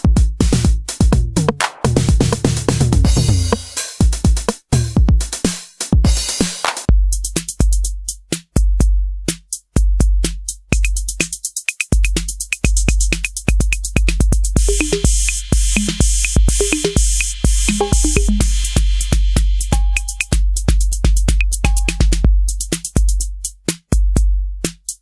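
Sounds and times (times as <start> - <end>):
deep bass drum: 0.0 - 5.4, 6.9 - 11.2, 12.0 - 24.9
hi-hat ticks: 0.0 - 25.0
hissing cymbal: 14.6 - 20.3.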